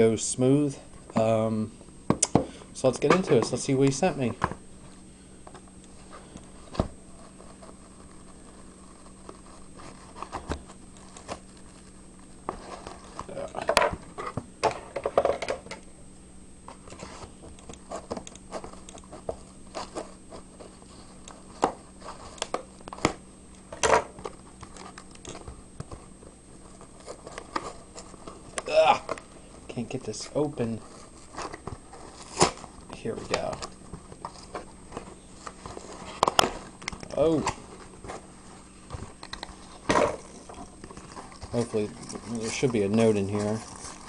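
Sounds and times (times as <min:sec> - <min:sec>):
packaging crinkling and tearing: 0:39.0 - 0:44.0.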